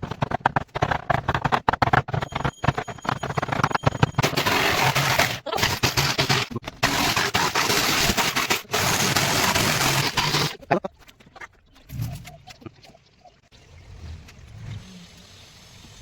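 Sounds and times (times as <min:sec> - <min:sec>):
woodworking tool scraping wood: 0:00.0 - 0:10.6.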